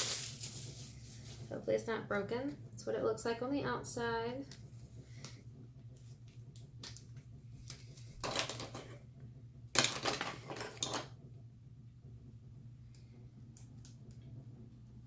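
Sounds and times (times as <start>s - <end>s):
plastic crinkling: 0.0s - 1.5s.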